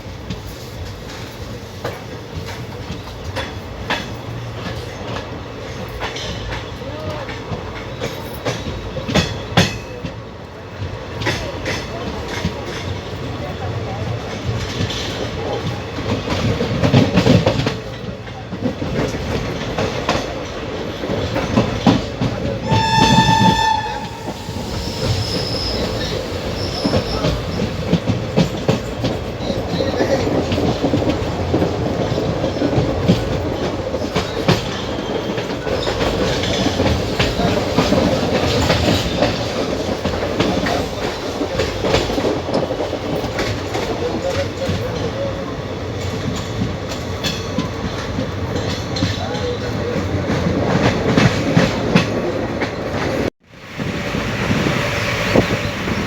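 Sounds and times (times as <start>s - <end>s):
train running rumble: 0.0s - 56.0s
train horn: 22.6s - 26.0s.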